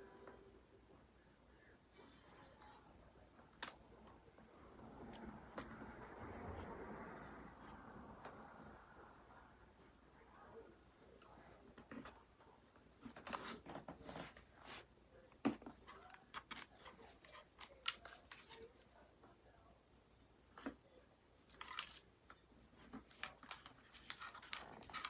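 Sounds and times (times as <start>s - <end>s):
hands handling light strip: 15.6s - 18.8s, 21.4s - 25.0s.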